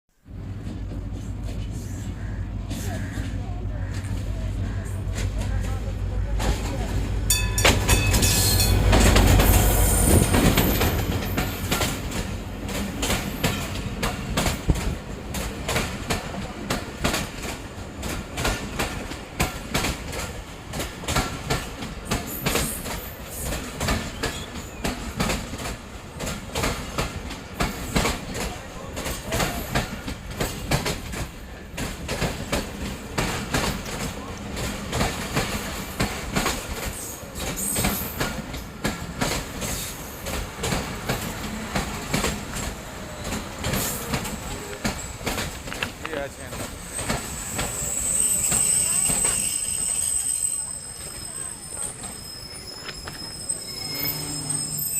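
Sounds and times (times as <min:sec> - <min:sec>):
diesel locomotive rumble: 0:00.2 - 0:54.9
train wheels clickety-clack: 0:00.5 - 0:54.9.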